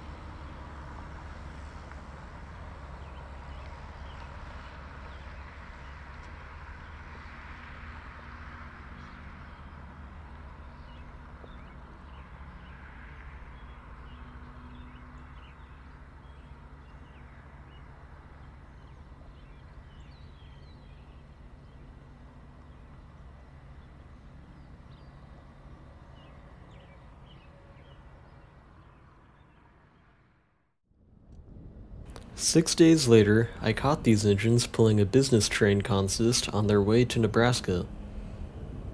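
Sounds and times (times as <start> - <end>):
birds chirping: 32.1 - 38.9
freight train rumbling: 32.1 - 38.9.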